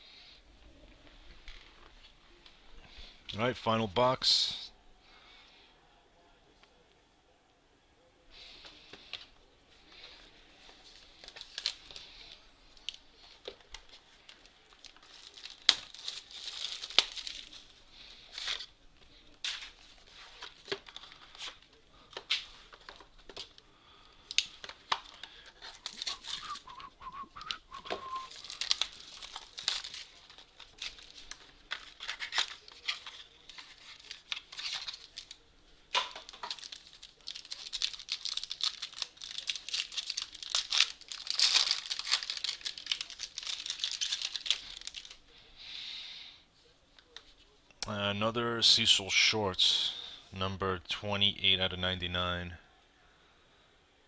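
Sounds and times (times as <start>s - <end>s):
plastic packaging tearing and crinkling: 10.9s - 18.7s, 19.3s - 23.6s, 24.2s - 26.8s, 27.5s - 45.2s.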